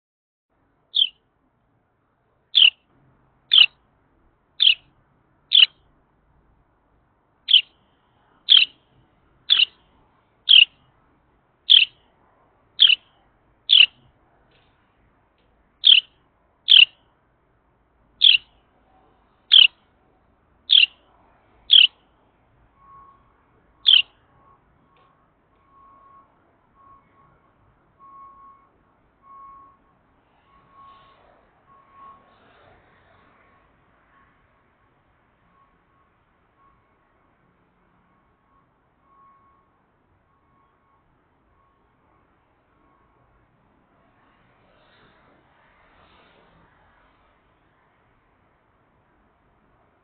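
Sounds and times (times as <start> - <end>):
wren sharp call notes: 1.0 - 1.2, 2.6 - 2.8, 3.5 - 3.7, 4.6 - 4.8, 5.5 - 5.7, 7.5 - 7.8, 8.5 - 8.8, 9.5 - 9.8, 10.5 - 10.8, 11.7 - 12.0, 12.8 - 13.1, 13.7 - 14.0, 15.8 - 16.1, 16.7 - 17.0, 18.2 - 18.5, 19.5 - 19.8, 20.7 - 21.0, 21.7 - 22.0, 23.8 - 24.1.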